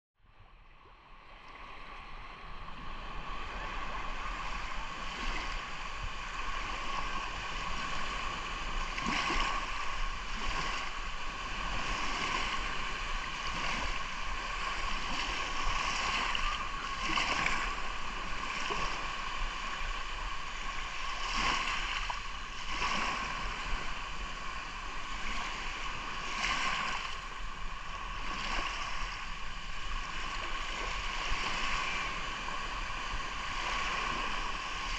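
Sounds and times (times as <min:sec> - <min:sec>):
waves washing onto shore: 0:00.8 - 0:34.9.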